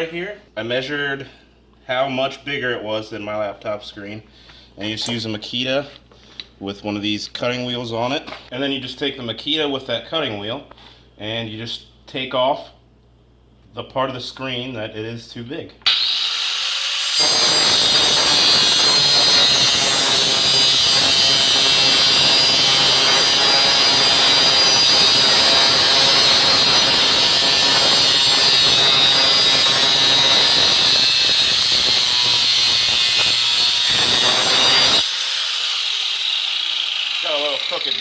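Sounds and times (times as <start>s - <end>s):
grinder cutting whine: 15.9s - 38.0s.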